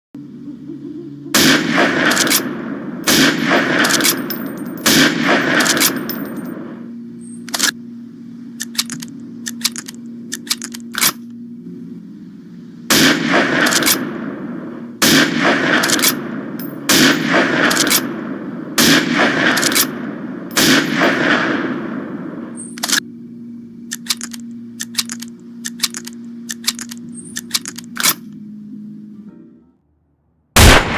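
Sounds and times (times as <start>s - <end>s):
steady low hum: 0.2s - 30.9s
rifle shots: 1.4s - 6.8s, 12.9s - 23.0s, 30.6s - 30.9s
sharp rifle bolt clicks: 2.0s - 2.5s, 3.1s - 6.4s, 7.4s - 7.8s, 8.6s - 11.3s, 13.6s - 14.0s, 15.7s - 18.1s, 19.4s - 20.8s, 22.6s - 23.0s, 23.9s - 28.2s
light metallic clicks: 23.9s - 28.4s.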